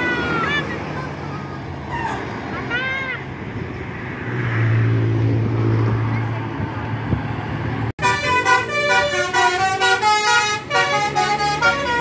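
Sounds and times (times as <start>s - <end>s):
multi-tone air horn tune: 8.0s - 12.0s.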